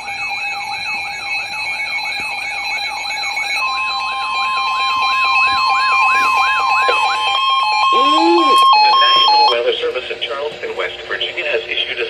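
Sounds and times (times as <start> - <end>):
siren-like alarm sweep: 0.0 - 9.6
steady electronic alert tones: 2.6 - 9.6.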